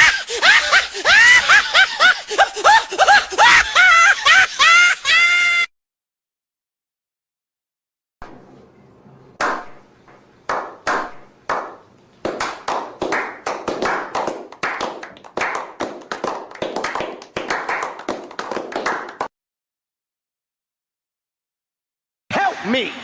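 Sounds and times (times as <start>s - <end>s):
hands clapping: 9.4s - 19.3s.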